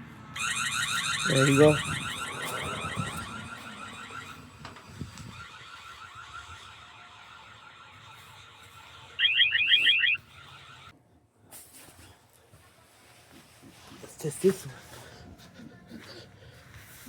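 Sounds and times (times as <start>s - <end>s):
security alarm siren warbling: 0.3s - 10.9s.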